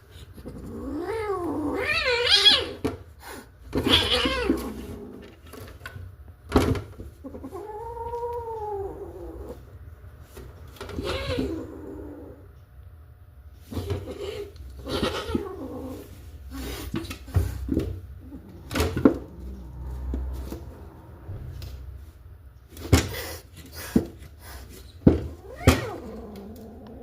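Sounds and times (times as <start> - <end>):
cat meowing: 25.3 - 27.0.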